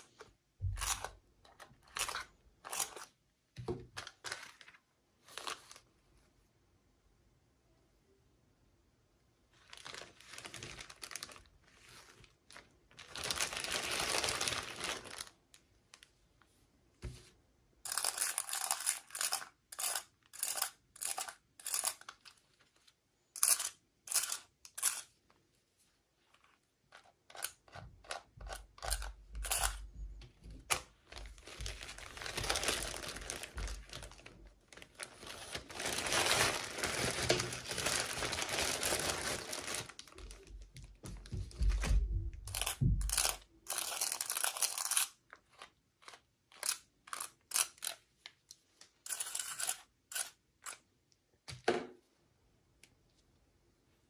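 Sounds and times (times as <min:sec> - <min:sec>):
plastic packaging rustling: 0:03.8 - 0:05.9, 0:09.6 - 0:16.1, 0:30.5 - 0:46.7
sharp packaging crinkles: 0:09.6 - 0:16.1, 0:31.0 - 0:40.5, 0:42.5 - 0:48.0.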